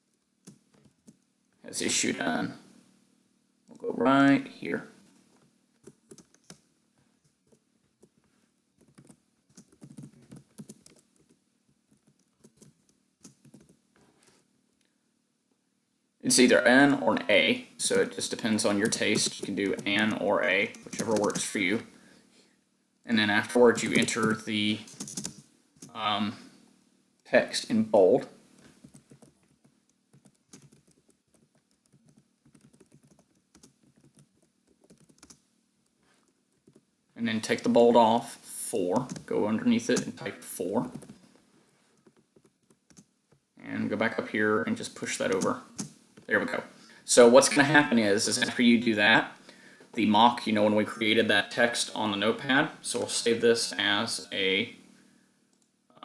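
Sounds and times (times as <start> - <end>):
typing on computer keyboard: 5.8 - 6.6, 8.8 - 13.8, 20.6 - 21.5, 23.7 - 25.9, 28.8 - 35.4, 42.0 - 43.4.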